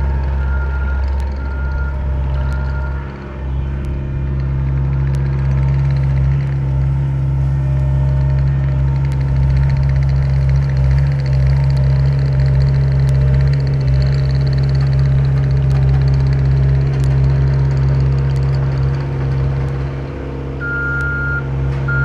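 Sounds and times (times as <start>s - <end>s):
reversing alarm beep: 0.0s - 3.2s, 20.6s - 22.0s
skid steer diesel engine running: 0.0s - 22.0s
sharp clicks: 0.2s - 7.0s, 7.9s - 19.9s.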